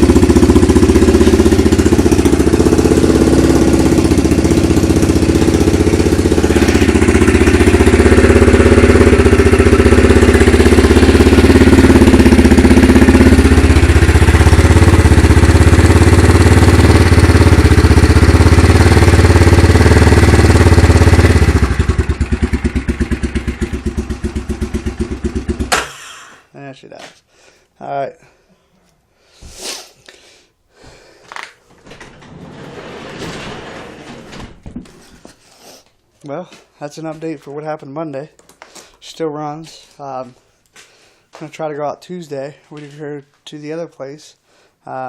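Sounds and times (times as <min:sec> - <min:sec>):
quad bike engine idling: 0:00.0 - 0:25.9.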